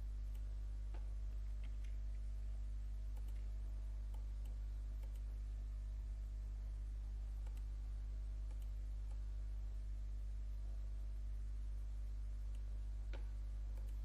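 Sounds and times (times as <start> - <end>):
low electrical hum: 0.0 - 14.0
computer mouse clicks: 3.1 - 3.5, 4.1 - 5.3, 7.4 - 7.7, 8.5 - 9.2, 12.5 - 14.0.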